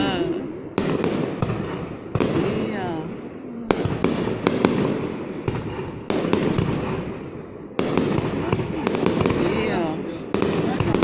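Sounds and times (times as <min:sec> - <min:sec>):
firework bangs: 0:00.0 - 0:11.0
rumble of firework bursts: 0:00.0 - 0:11.0.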